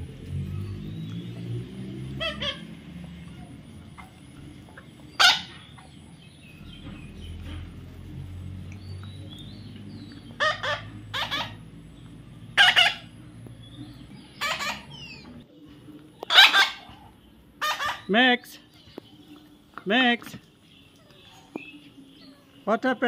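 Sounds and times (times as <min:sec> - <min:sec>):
fowl calling: 0:02.1 - 0:06.0, 0:10.2 - 0:11.7, 0:12.5 - 0:13.2, 0:14.3 - 0:15.4, 0:16.2 - 0:18.2.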